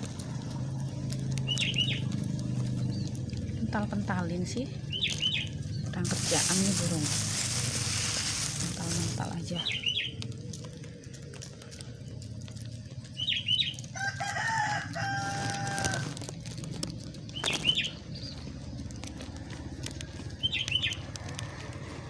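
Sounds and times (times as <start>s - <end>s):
wings fluttering: 6.0s - 10.2s
rooster crowing: 13.9s - 16.3s.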